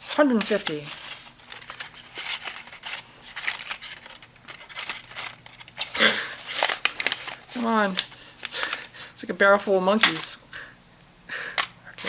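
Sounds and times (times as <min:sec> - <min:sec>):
small parts clicking and rustling: 0:00.0 - 0:09.0.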